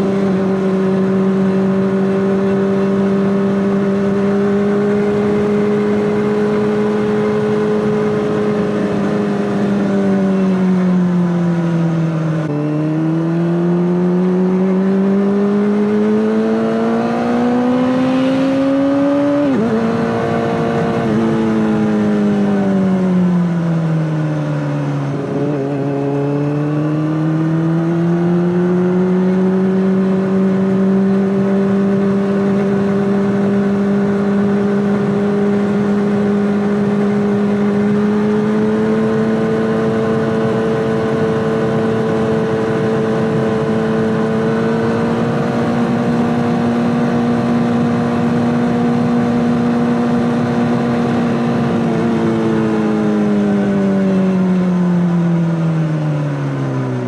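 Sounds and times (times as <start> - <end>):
motorcycle engine revving: 0.0 - 57.0.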